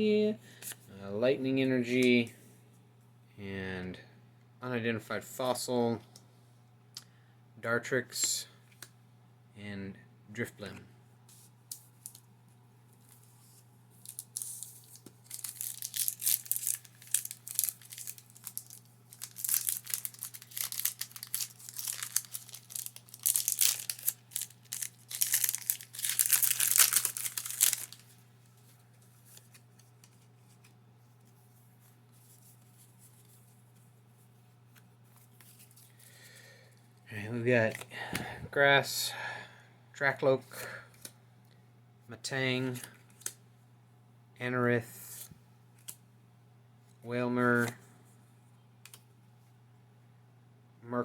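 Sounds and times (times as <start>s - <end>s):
foil wrapper tearing and crinkling: 14.0s - 28.2s.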